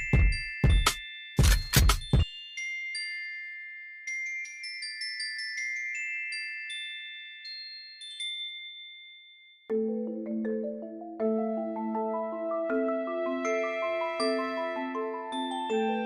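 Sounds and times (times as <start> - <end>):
sparkling chime notes ringing: 2.0 - 9.7, 13.1 - 16.0.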